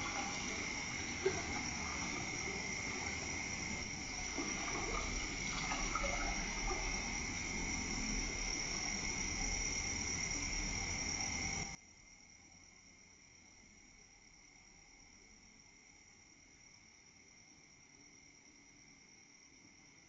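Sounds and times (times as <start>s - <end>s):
crickets and insects trilling: 0.0s - 20.0s.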